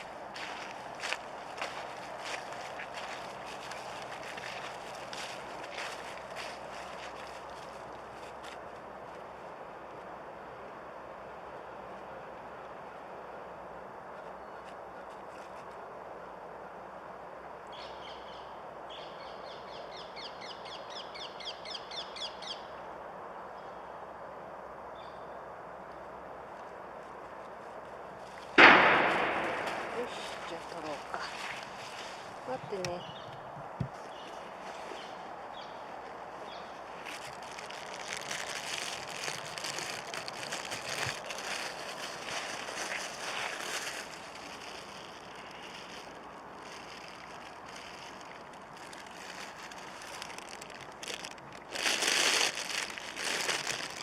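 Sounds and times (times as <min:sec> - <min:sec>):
plastic bag crinkling: 0:36.9 - 0:54.0.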